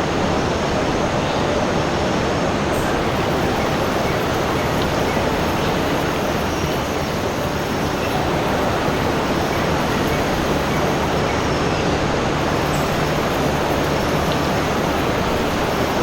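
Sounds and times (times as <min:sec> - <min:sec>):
water rushing: 0:00.0 - 0:16.0.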